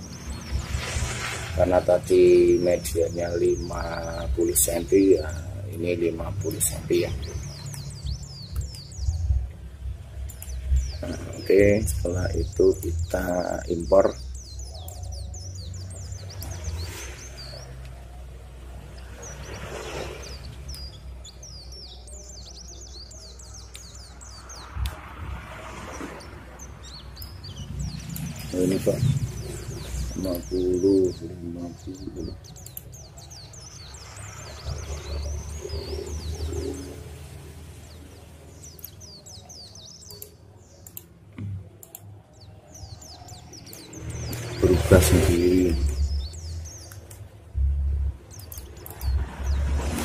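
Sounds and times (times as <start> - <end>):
small birds chirping: 0.0 - 50.0
computer mouse clicking: 10.2 - 10.6, 40.0 - 41.1, 41.8 - 42.1
low hum: 43.8 - 50.0.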